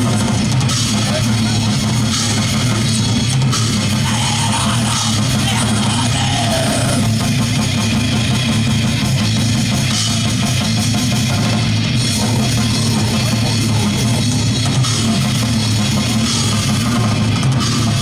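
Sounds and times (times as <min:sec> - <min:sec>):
distorted electric guitars: 0:00.0 - 0:18.0
drum kit: 0:00.0 - 0:18.0.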